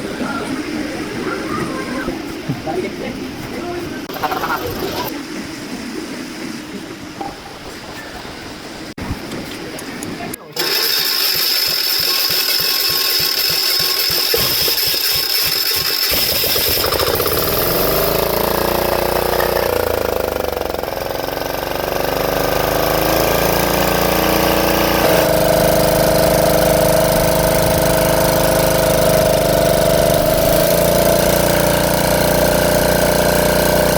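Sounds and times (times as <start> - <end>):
small generator engine running: 10.6 - 33.9.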